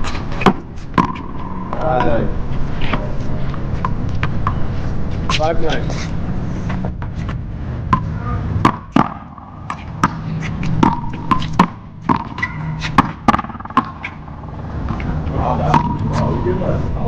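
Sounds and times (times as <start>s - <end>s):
paddles smacking rubber ball: 0.4s - 1.4s, 8.0s - 14.2s.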